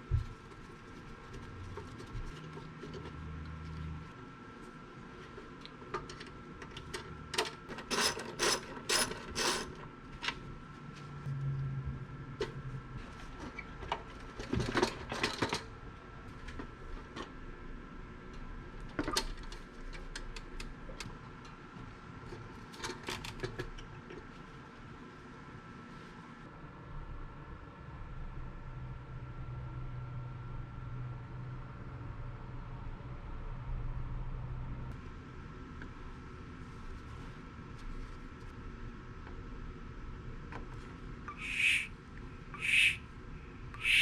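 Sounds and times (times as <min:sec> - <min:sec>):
faint steady tone: 0:41.3 - 0:41.9, 0:42.6 - 0:43.0.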